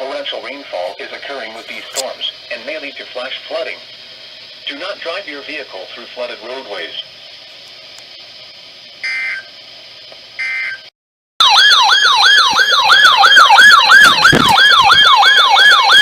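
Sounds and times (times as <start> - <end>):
yelping siren alert alarm: 9.0 - 9.5, 10.4 - 16.0.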